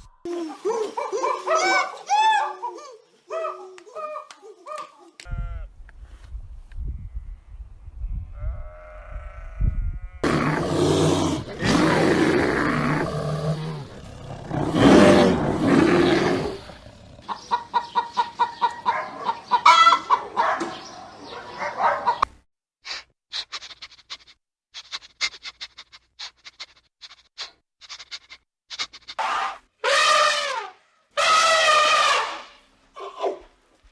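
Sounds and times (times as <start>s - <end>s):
fast pulsing animal calls: 23.4s - 29.6s.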